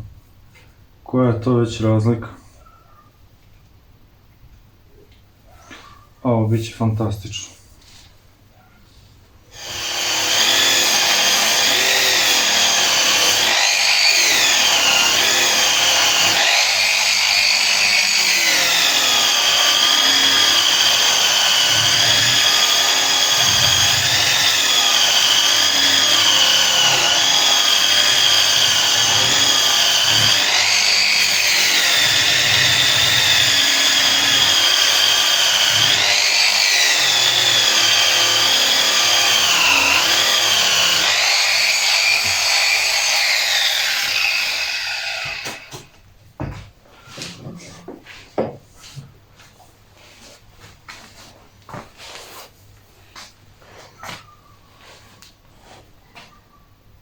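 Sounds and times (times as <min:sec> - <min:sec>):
wire brush grinding metal: 0:09.6 - 0:45.7.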